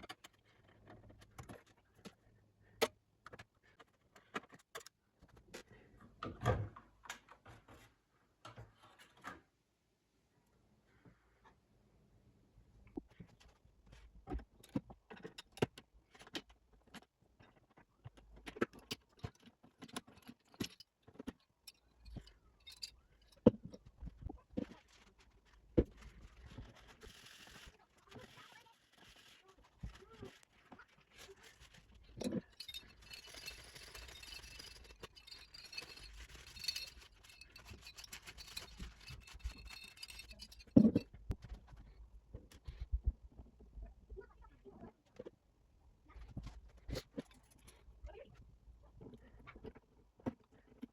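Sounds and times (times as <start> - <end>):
metallic clicks and clinks: 18.8 - 23.6, 31.7 - 41.2.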